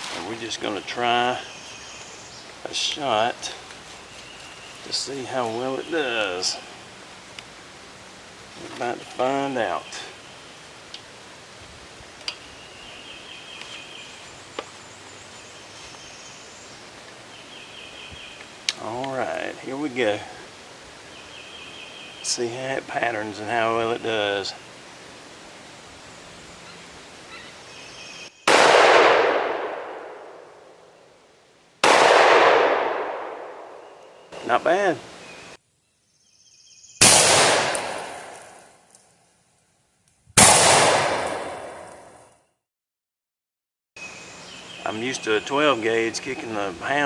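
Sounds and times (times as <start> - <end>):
shotgun blasts with echo: 28.5 - 30.4, 31.8 - 33.8, 37.0 - 38.6, 40.4 - 42.1.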